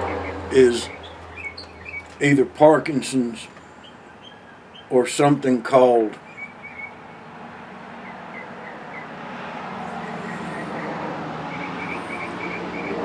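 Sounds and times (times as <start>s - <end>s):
small bird chirping: 0.0s - 2.2s, 11.5s - 13.0s
steady low hum: 0.0s - 4.0s
vehicle running nearby: 0.0s - 4.5s, 6.2s - 13.0s.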